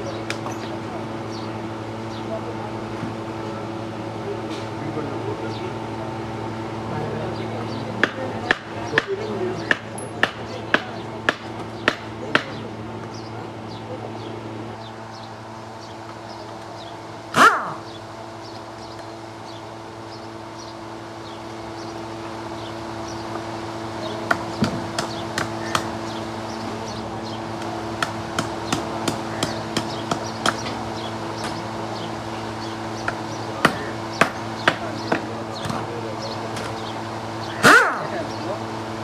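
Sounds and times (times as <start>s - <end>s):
animal call: 17.3s - 18.1s, 33.6s - 38.6s.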